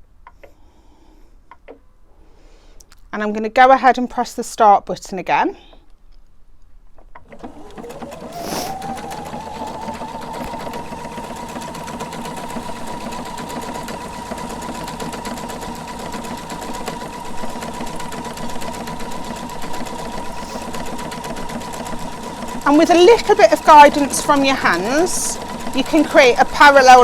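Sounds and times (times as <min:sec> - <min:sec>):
sewing machine motor whine: 0:07.3 - 0:27.0
rapid needle strokes: 0:08.2 - 0:09.5.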